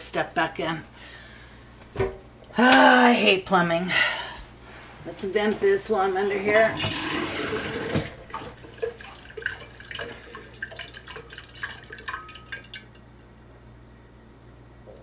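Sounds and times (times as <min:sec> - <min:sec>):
water dripping: 0:08.2 - 0:13.1.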